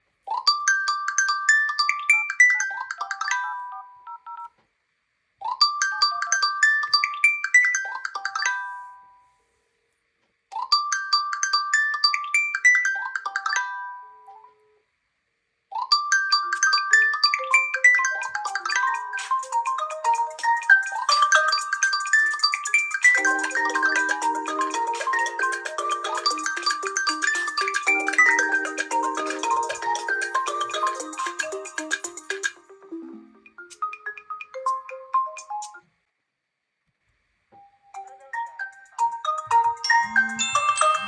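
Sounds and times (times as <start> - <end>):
ringtone melody of quick notes: 0.3 - 4.5, 5.4 - 9.4, 15.8 - 35.9, 37.9 - 41.0.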